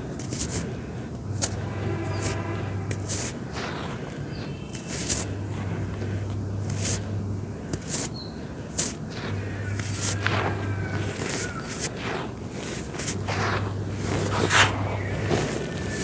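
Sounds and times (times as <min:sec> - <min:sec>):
dirt crunching and crackling: 0:00.2 - 0:16.0
low hum: 0:01.0 - 0:07.7, 0:08.3 - 0:16.0.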